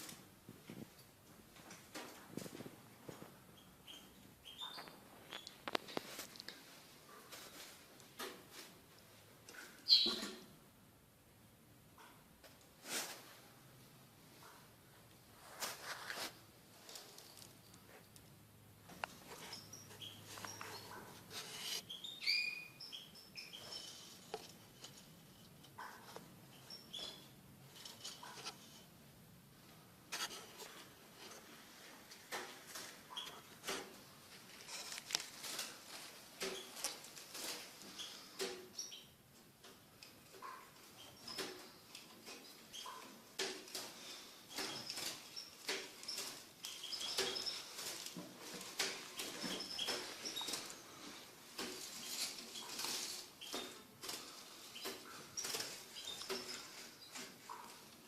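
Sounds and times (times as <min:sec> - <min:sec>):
rustling: 0:00.0 - 0:09.8, 0:12.4 - 0:13.6, 0:14.3 - 0:22.3, 0:23.4 - 0:38.5, 0:40.3 - 0:58.0
birds chirping: 0:03.5 - 0:05.6, 0:09.8 - 0:10.4, 0:19.1 - 0:24.0
lovebirds chirping: 0:03.5 - 0:05.7, 0:09.8 - 0:10.4, 0:19.1 - 0:24.3, 0:44.0 - 0:48.1, 0:51.8 - 0:57.8.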